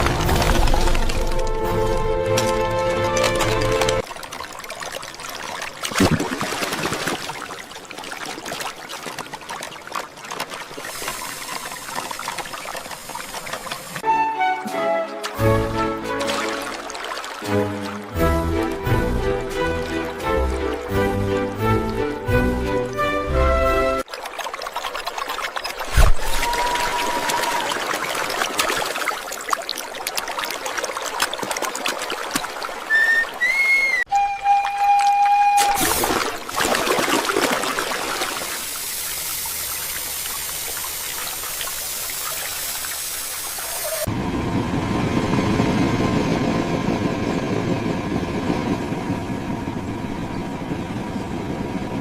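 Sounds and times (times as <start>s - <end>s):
water trickling and splashing: 0.0s - 44.1s
music: 1.2s - 4.0s, 14.0s - 16.7s, 17.4s - 24.0s, 34.1s - 35.8s
steady whistle tone: 32.9s - 36.2s
whistle-like tones: 32.9s - 36.2s.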